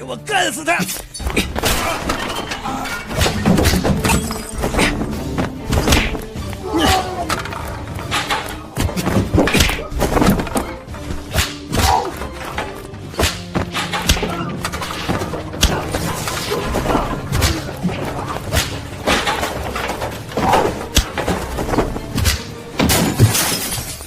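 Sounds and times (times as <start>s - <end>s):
tense background music: 0.0s - 24.0s
crashes and breaking: 13.7s - 24.0s.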